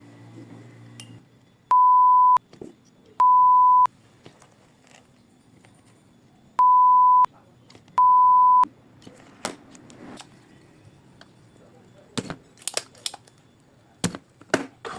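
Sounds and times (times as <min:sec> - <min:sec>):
electronic beeps: 0:01.7 - 0:02.4, 0:03.2 - 0:03.9, 0:06.6 - 0:07.3, 0:08.0 - 0:08.7.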